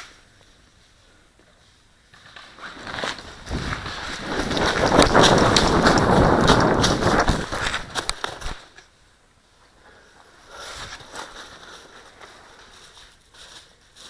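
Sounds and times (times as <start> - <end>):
footsteps: 0.0 - 8.8
gear rustling: 2.2 - 8.7
wind on microphone: 3.4 - 8.1.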